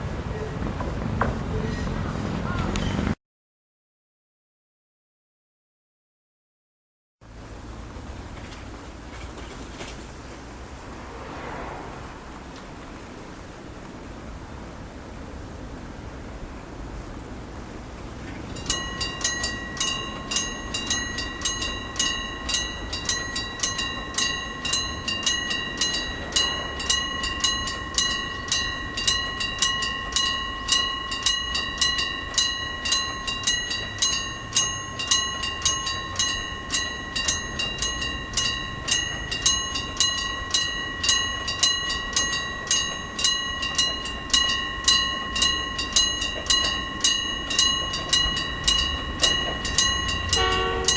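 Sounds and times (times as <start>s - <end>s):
level crossing electric bell ringing: 18.5s - 50.9s.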